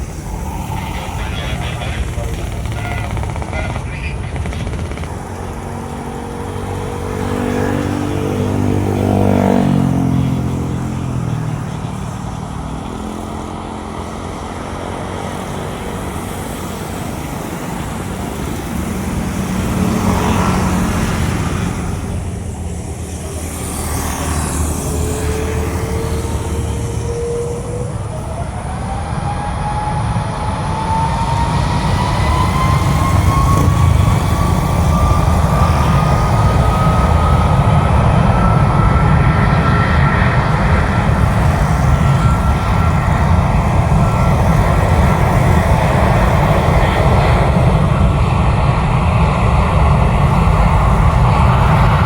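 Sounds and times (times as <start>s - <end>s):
low rumble: 0.0s - 7.3s
jet engines spooling up: 0.0s - 52.0s
passing road vehicle engine: 0.0s - 52.0s.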